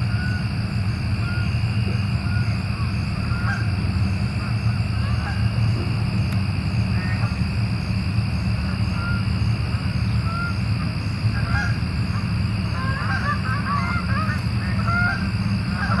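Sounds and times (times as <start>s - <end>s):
waterbirds calling: 11.4s - 16.0s.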